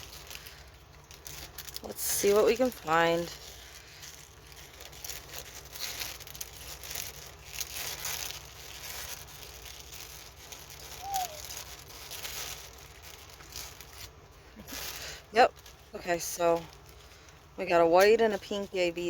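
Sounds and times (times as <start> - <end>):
plastic bags crinkling: 0.0 - 19.0.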